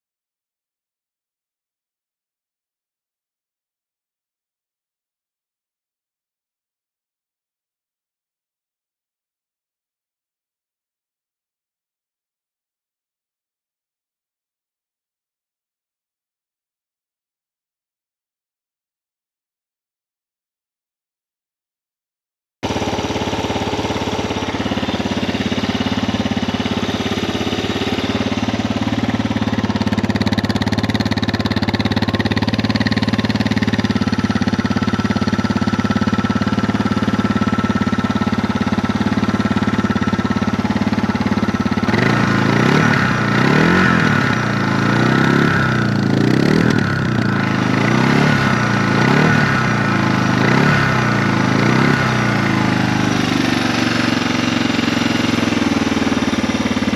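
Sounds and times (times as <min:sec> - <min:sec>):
motorcycle engine idling and revving: 0:22.6 - 0:56.9.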